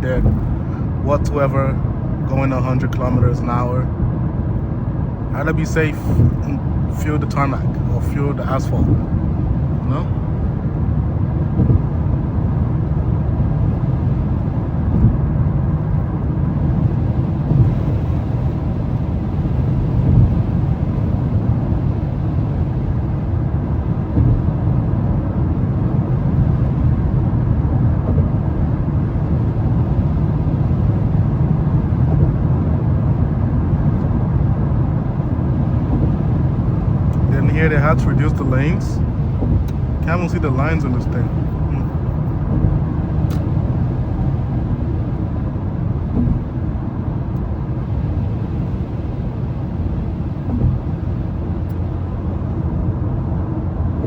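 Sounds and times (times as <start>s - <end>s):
car tyre and engine rumble: 0.0s - 54.0s.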